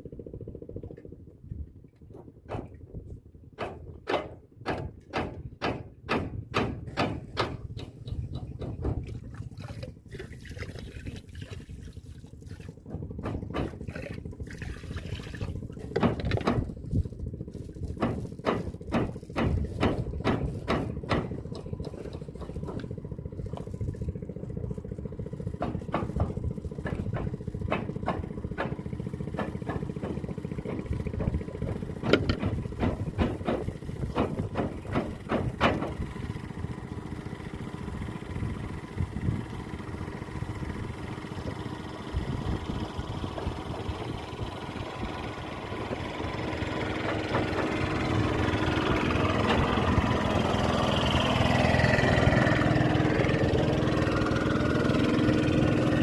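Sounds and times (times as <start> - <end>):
sharp knocks or clicks: 3.6 - 9.1, 29.4 - 36.0
small engine running: 9.7 - 56.0.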